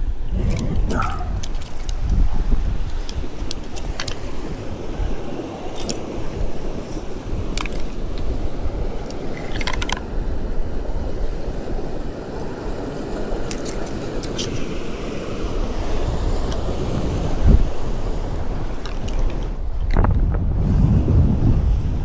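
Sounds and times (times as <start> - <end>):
wind: 0.0 - 22.0
light metallic clinks: 5.7 - 6.5.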